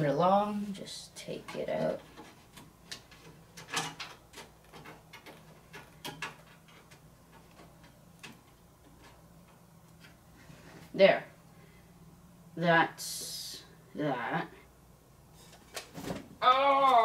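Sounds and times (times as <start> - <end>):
plastic parts clicking and knocking: 1.4 - 10.2.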